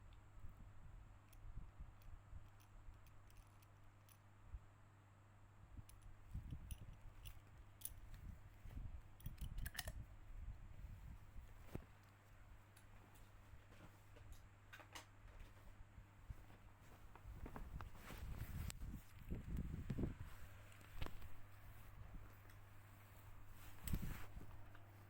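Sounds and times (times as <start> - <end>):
low steady hum: 0.0 - 25.0
faint small clicks and taps: 1.2 - 4.3, 5.8 - 10.0, 11.5 - 15.7, 16.3 - 21.4, 23.6 - 24.9.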